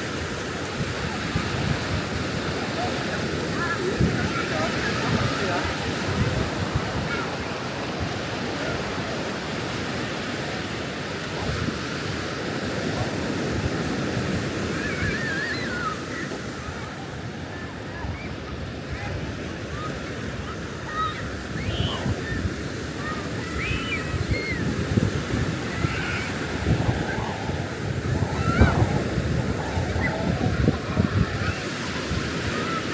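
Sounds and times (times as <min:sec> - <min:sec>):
wind buffeting microphone: 0:00.0 - 0:09.2, 0:21.2 - 0:32.9
sea waves on beach: 0:00.0 - 0:32.9.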